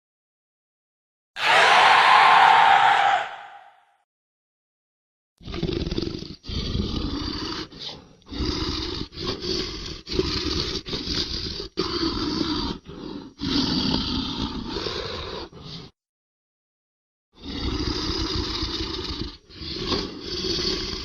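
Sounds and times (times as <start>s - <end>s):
dragon roar growls: 1.4s - 3.7s.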